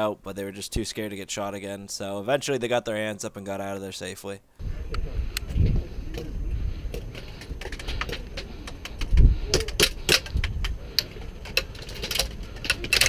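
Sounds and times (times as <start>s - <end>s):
wind rumble on microphone: 4.6s - 10.9s.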